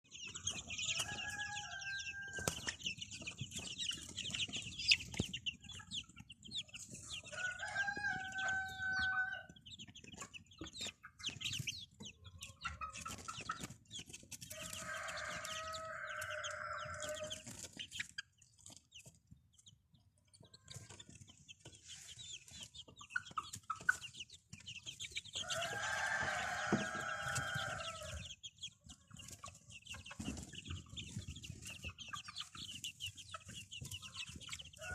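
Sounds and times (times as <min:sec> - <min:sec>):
chicks peeping: 0:00.0 - 0:34.9
hens clucking: 0:00.1 - 0:34.9
rooster crowing: 0:01.0 - 0:02.7, 0:07.3 - 0:09.5, 0:14.5 - 0:17.4, 0:25.4 - 0:28.2.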